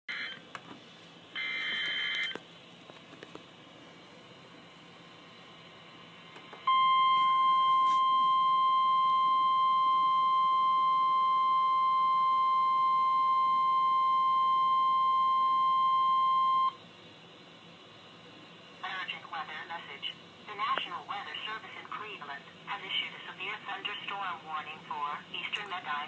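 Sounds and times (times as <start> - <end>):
steady alarm tone: 6.7 - 16.8.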